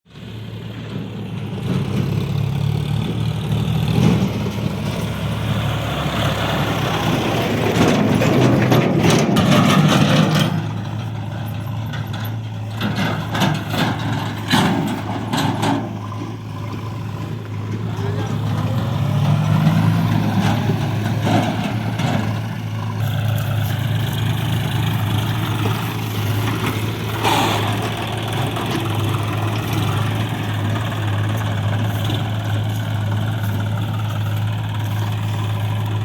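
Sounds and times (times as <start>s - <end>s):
diesel engine of heavy machinery: 0.0s - 36.0s
metal knocks and clanks: 7.6s - 22.9s.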